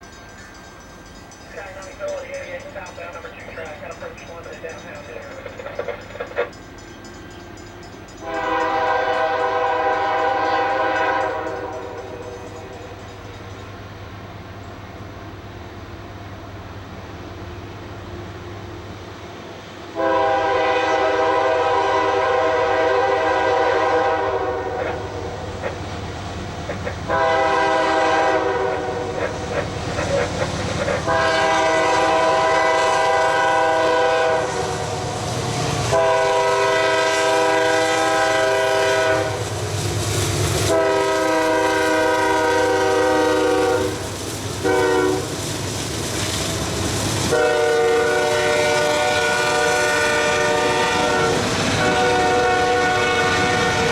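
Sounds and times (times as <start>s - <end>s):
train rumbling on rails: 0.0s - 53.9s
locomotive air horn blasts: 8.2s - 12.4s, 20.0s - 25.4s, 27.1s - 29.3s, 31.0s - 39.4s, 40.6s - 44.0s, 44.6s - 45.3s, 47.3s - 53.9s.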